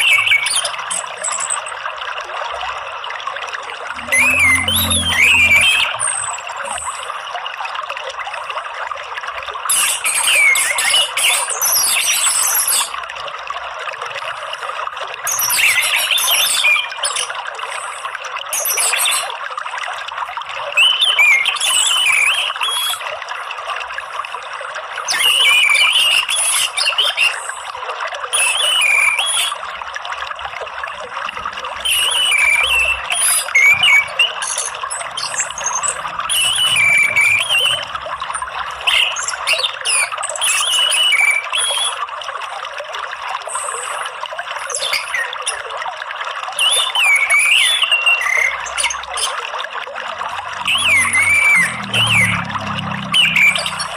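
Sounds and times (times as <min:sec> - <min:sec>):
running water rushing: 0:00.0 - 0:53.9
thrush singing: 0:03.9 - 0:06.4.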